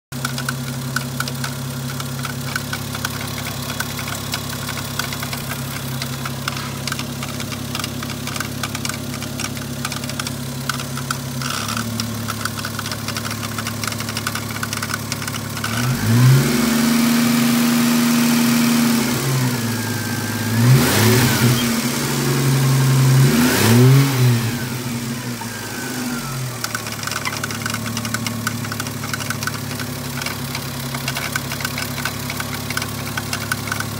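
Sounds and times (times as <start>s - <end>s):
fast ticking: 0.2s - 16.0s, 26.5s - 33.9s
car engine idling and revving: 0.2s - 33.9s.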